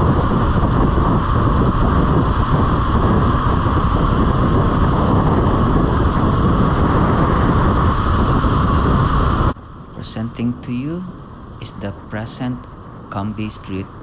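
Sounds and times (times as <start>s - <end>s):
wind rushing over microphone: 0.0s - 14.0s.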